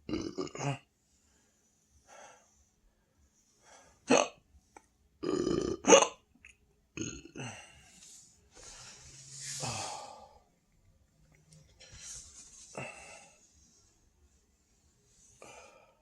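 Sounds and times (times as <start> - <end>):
person belching: 0.0 - 0.8, 4.1 - 4.4, 5.2 - 6.2, 7.0 - 7.4.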